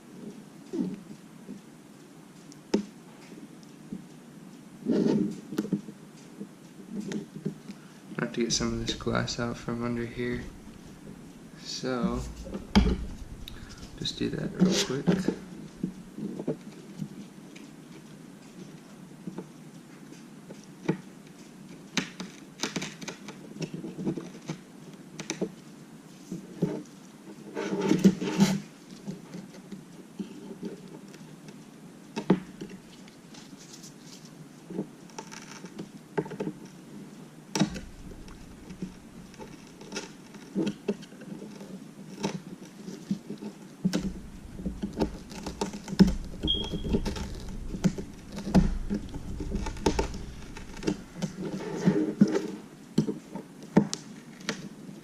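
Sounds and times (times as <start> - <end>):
tool scraping glass: 37.6 - 39.6, 44.0 - 51.6.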